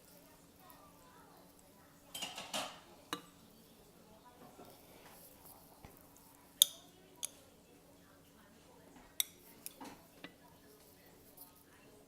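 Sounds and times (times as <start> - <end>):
utensils clinking against bowl: 2.1 - 3.3.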